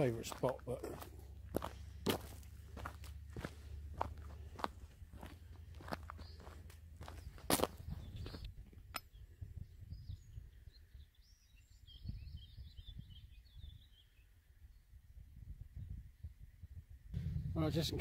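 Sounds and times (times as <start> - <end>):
footsteps: 0.0 - 8.5
low rumble: 17.1 - 18.0.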